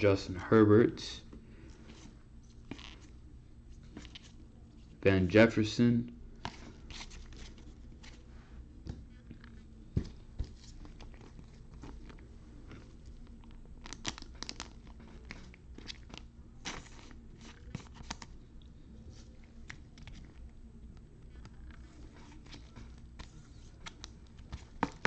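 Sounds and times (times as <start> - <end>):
faint steady hum: 0.0 - 25.0
foil wrappers crinkling: 13.2 - 18.3.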